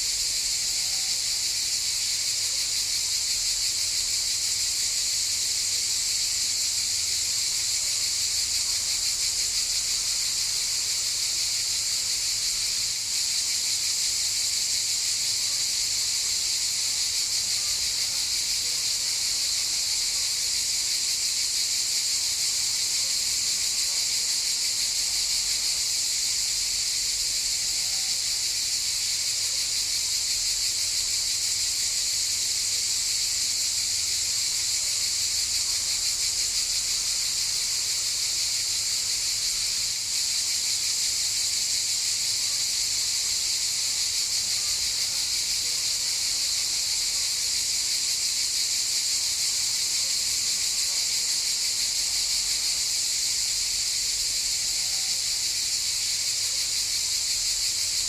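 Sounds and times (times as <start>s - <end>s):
cicadas buzzing: 0.0s - 58.0s.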